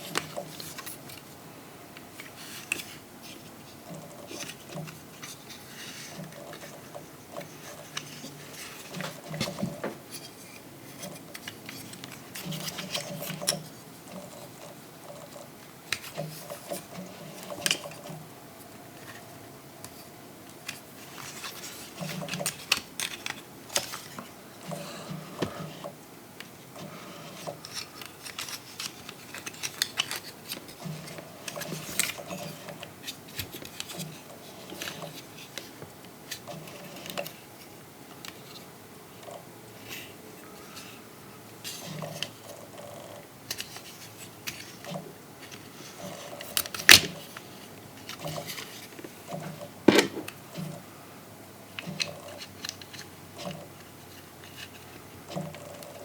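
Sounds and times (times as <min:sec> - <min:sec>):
plastic toy parts clicking: 0:20.6 - 0:24.0, 0:27.6 - 0:30.7.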